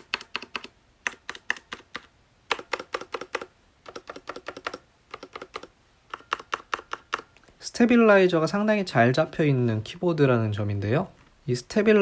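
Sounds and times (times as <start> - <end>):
keyboard typing: 0.0 - 7.5.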